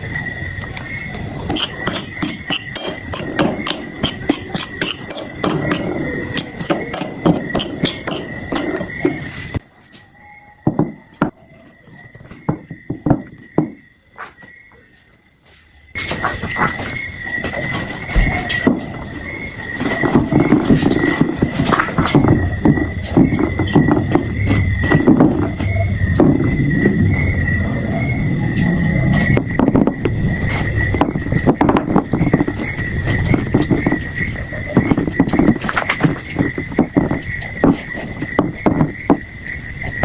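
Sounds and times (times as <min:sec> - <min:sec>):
sharp knocks and clicks: 0:00.6 - 0:09.2
high whine: 0:22.1 - 0:31.4.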